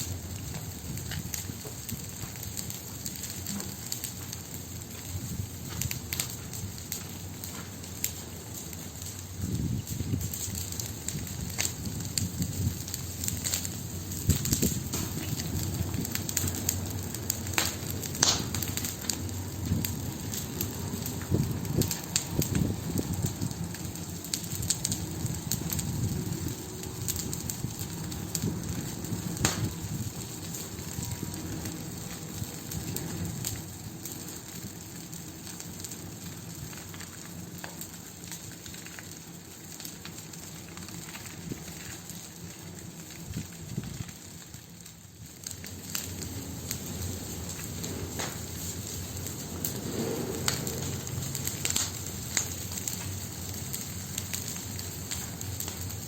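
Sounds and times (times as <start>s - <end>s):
wood fire crackling: 0.0s - 56.0s
low rushing noise: 46.0s - 53.0s.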